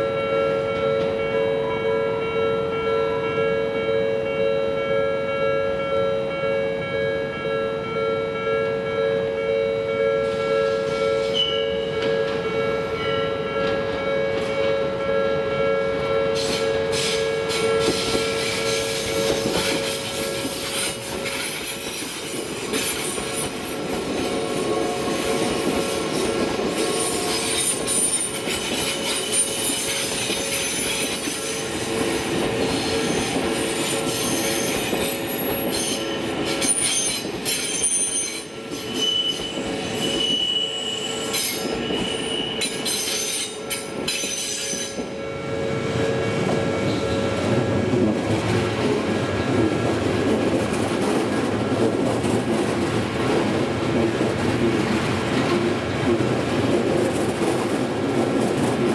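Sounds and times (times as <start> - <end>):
train wheels on rails: 0.0 - 3.4, 8.8 - 58.9
two-tone crossing alarm ringing: 0.0 - 47.6
high wheel squeal: 16.4 - 45.0.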